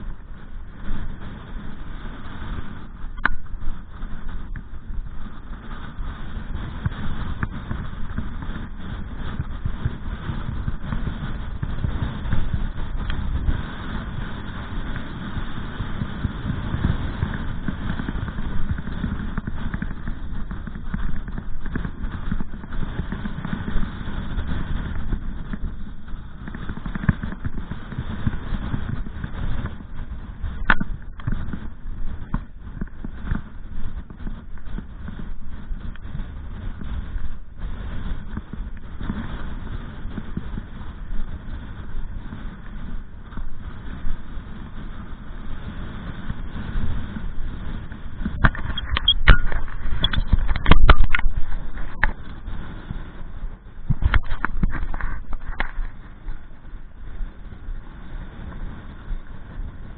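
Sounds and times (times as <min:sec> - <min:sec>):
wind buffeting microphone: 0:00.0 - 0:59.9.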